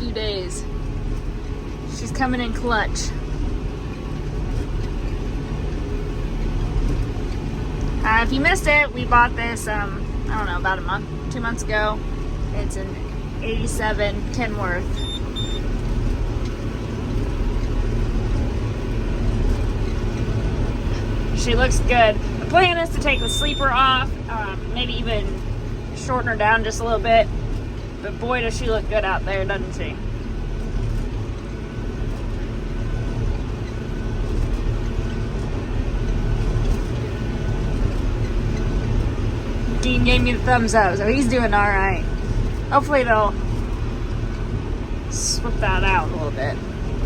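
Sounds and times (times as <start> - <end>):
tractor and baler running: 0.0 - 47.0
short high beeps: 14.9 - 15.6, 23.0 - 23.8.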